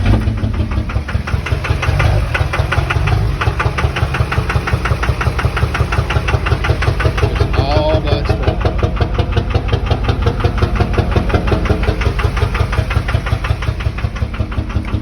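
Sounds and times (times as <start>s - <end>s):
diesel engine idling: 0.0s - 15.0s
rapid even engine knocking: 0.0s - 15.0s.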